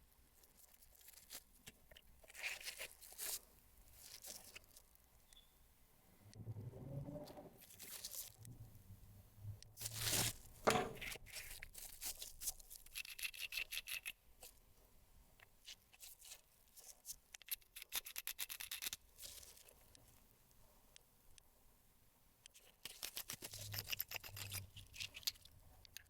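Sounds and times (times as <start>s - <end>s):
wrapping rubbing and tearing: 2.2s - 4.9s, 7.6s - 8.4s, 9.8s - 10.5s.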